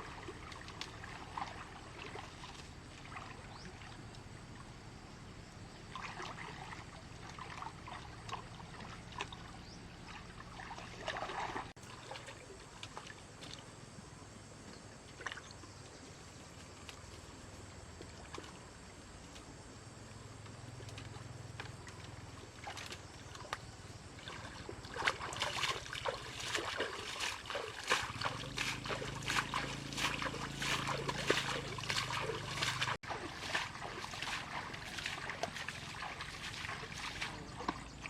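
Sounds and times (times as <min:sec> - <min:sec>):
water sloshing and splashing: 0:00.0 - 0:04.8, 0:05.6 - 0:19.6, 0:20.3 - 0:38.0
low steady hum: 0:27.6 - 0:38.0.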